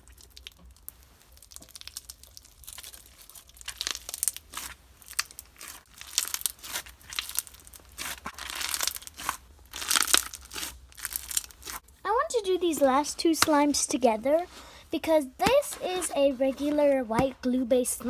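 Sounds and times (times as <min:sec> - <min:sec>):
slime squished by hand: 0:00.0 - 0:11.8.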